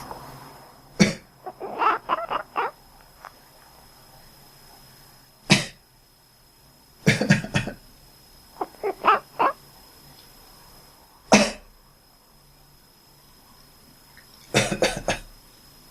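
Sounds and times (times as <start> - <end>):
person coughing: 1.0 - 1.2, 5.5 - 5.8, 7.0 - 7.8, 11.3 - 11.7, 14.6 - 15.3
cat making quack-like calls: 1.4 - 2.8, 8.6 - 9.6.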